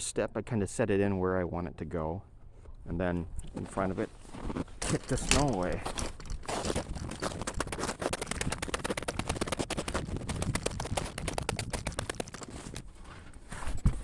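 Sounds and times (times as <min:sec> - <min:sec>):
boots crunching in snow: 0:04.1 - 0:08.8.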